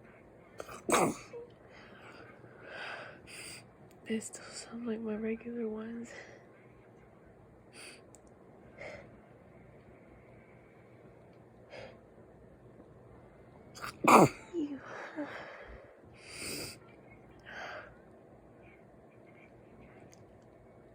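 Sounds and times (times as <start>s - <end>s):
woman sneezing: 0.6s - 1.4s, 13.8s - 14.7s
breaths and sniffs: 1.8s - 3.6s, 15.0s - 16.8s.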